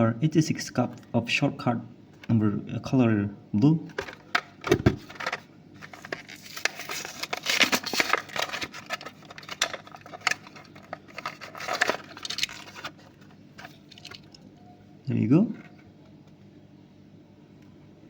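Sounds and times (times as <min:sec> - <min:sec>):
plastic and cardboard crinkling: 0:03.9 - 0:14.4.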